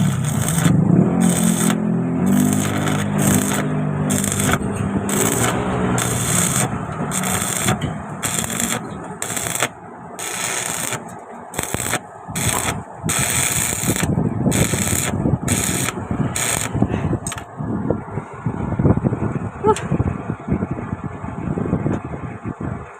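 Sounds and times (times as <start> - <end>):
scraping strokes on metal: 0.0 - 17.4.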